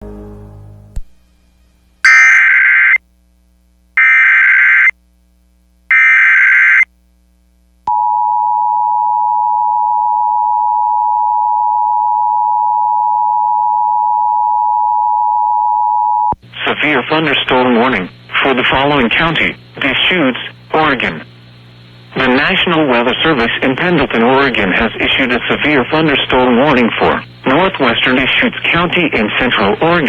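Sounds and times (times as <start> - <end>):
digital data screech: 2.1 - 3.0.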